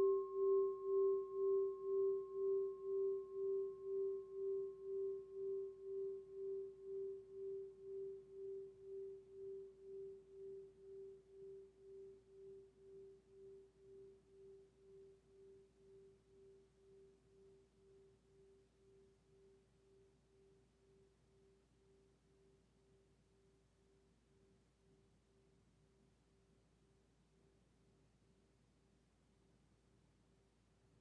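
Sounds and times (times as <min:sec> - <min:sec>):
singing bowl ringing: 0:00.0 - 0:18.0.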